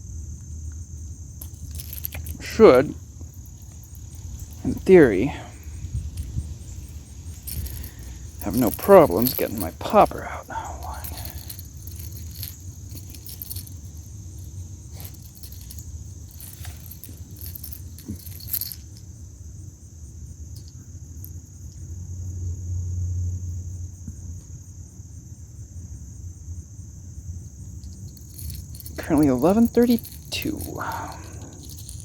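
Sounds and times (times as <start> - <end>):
insects droning: 0.0 - 32.0
handling rustles: 1.4 - 19.0, 27.8 - 32.0
light metallic clinks: 1.4 - 19.1, 27.7 - 32.0
low wind-like rumble: 3.0 - 8.5.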